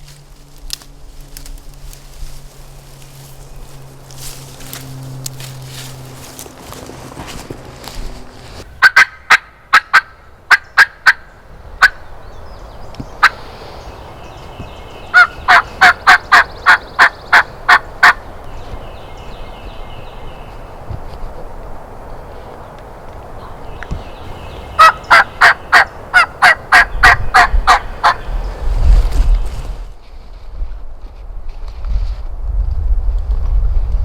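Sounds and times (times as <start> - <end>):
turkey call yelps: 8.8 - 12.0, 15.1 - 18.2, 24.8 - 28.2
wind noise: 10.2 - 34.0.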